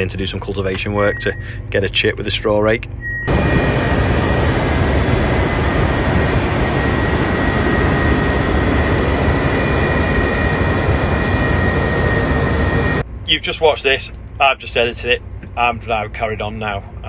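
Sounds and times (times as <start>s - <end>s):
heavy machinery rumbling: 3.3s - 13.0s
high machine whine: 3.3s - 13.0s.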